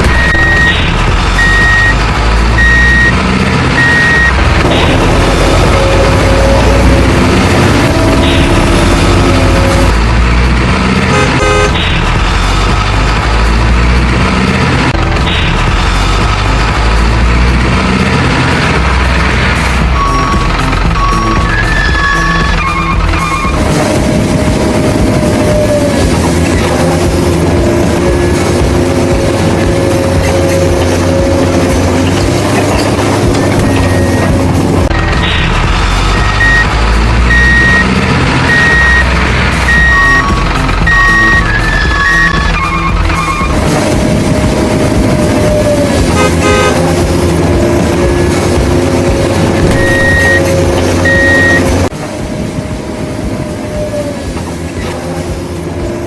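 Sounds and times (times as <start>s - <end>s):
diesel machinery engine rumble: 0.0s - 56.0s
short horn beeps: 11.1s - 12.0s, 46.2s - 46.9s, 49.7s - 51.8s.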